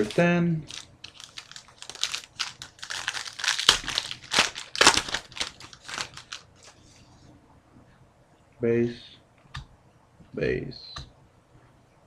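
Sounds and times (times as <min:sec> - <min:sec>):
wrapper crinkling and tearing: 0:00.0 - 0:06.8.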